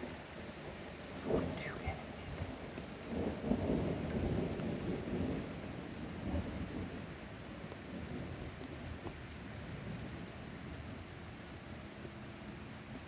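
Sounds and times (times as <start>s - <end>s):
steady rain: 0.0s - 13.0s
thunder rumbling: 1.1s - 7.1s.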